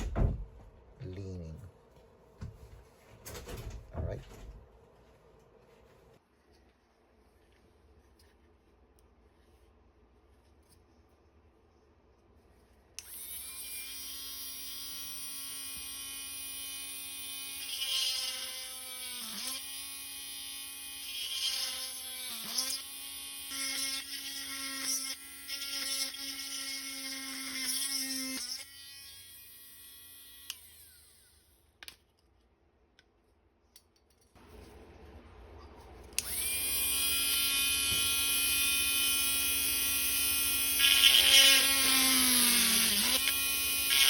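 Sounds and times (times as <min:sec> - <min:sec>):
rotary tool whining: 0:36.1 - 0:44.0.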